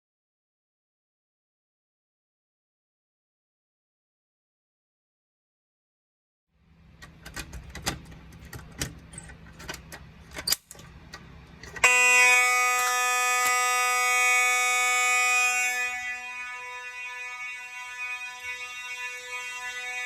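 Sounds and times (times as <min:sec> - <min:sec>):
fire alarm bells and horns ringing: 0:11.8 - 0:20.0.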